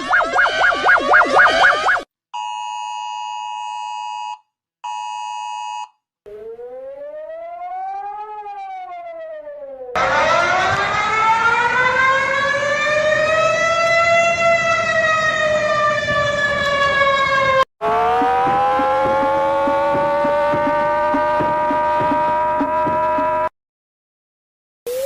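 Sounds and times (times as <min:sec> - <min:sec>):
warning siren wailing: 0:00.0 - 0:02.1, 0:06.3 - 0:23.5.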